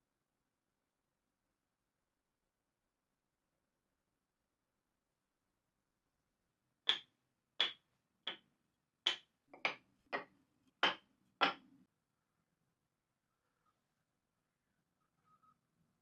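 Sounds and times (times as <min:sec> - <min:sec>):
hand tool knocks: 0:09.1 - 0:11.7.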